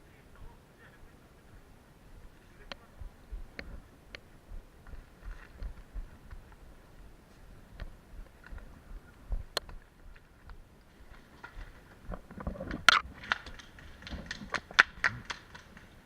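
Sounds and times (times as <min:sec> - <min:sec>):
rustling movement: 0:01.8 - 0:16.0
airsoft gun cracks: 0:12.8 - 0:15.9.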